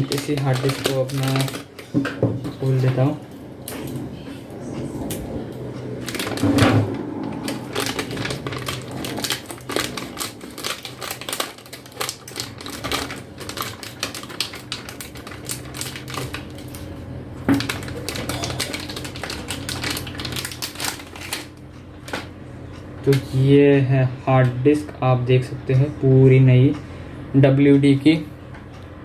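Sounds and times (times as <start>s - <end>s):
packaging clicks and crinkles: 0.0s - 2.0s, 6.0s - 6.6s, 7.4s - 22.3s.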